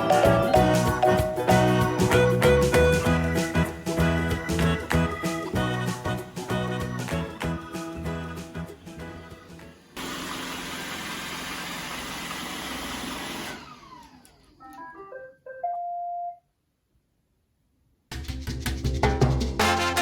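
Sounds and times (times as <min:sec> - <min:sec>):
background music: 0:00.0 - 0:09.7, 0:18.2 - 0:20.0
motor winding down whine: 0:10.0 - 0:14.6
robot vacuum running: 0:10.0 - 0:14.6.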